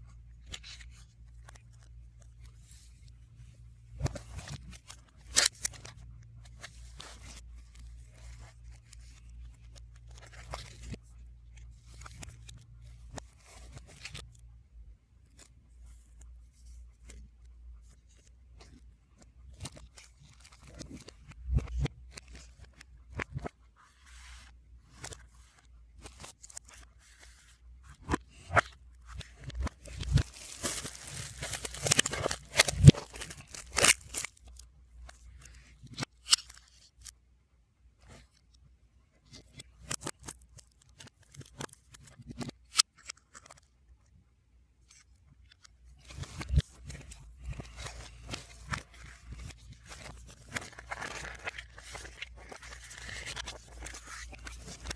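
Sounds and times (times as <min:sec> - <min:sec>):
paper and plastic rustling: 0:19.5 - 0:36.9, 0:46.0 - 0:54.9
crinkling and tearing: 0:24.2 - 0:37.1, 0:44.9 - 0:54.9.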